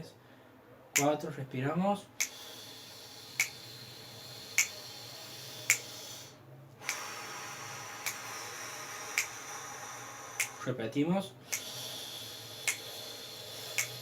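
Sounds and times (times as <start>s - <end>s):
airy breath out: 2.2s - 10.7s, 11.4s - 14.0s
breath in: 2.2s - 10.7s, 11.4s - 14.0s.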